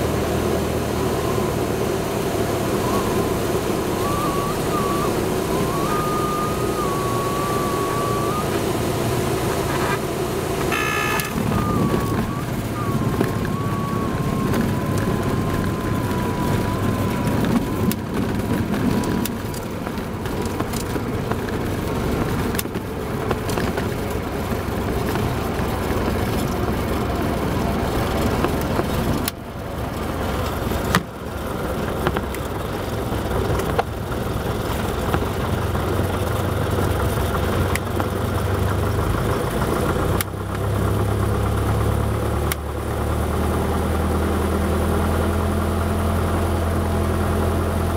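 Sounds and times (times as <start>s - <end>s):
propeller plane engine droning: 0.0s - 47.9s
faint whistling tone: 0.9s - 21.0s.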